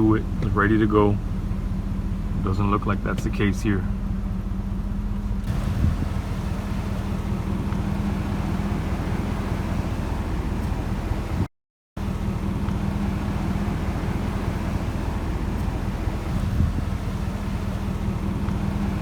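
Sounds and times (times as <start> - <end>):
steady low hum: 0.0 - 9.5.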